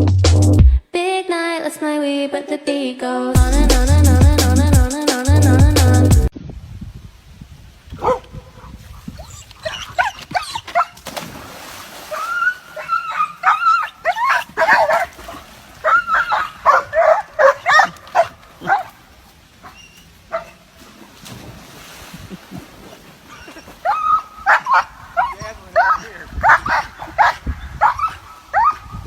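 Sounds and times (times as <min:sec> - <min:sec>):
dog whining and yipping: 0:09.2 - 0:11.0, 0:12.1 - 0:15.1, 0:15.8 - 0:18.9, 0:19.6 - 0:20.6, 0:23.3 - 0:28.9.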